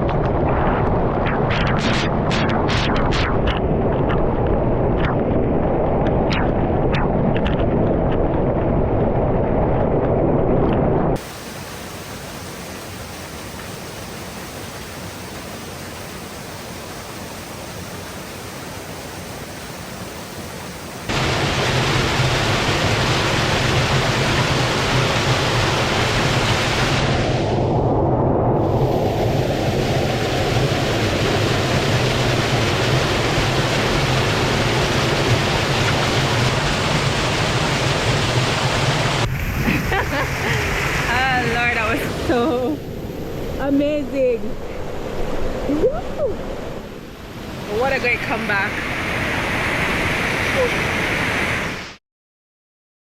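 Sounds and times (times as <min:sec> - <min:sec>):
river water rushing: 0:11.2 - 0:27.2, 0:44.8 - 0:51.9.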